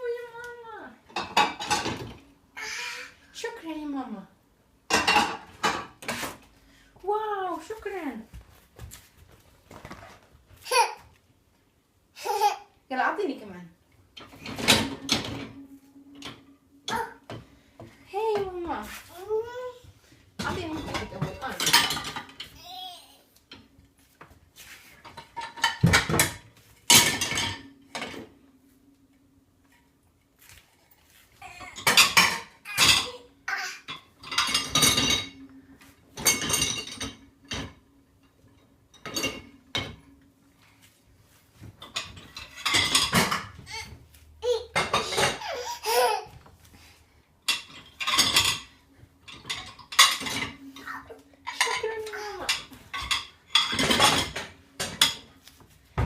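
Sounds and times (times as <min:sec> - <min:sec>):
dishes and cutlery clattering: 0:01.1 - 0:02.7, 0:04.9 - 0:06.4, 0:14.2 - 0:18.9, 0:20.4 - 0:22.8, 0:25.0 - 0:28.3, 0:31.6 - 0:40.2, 0:41.6 - 0:46.4, 0:47.4 - 0:55.7.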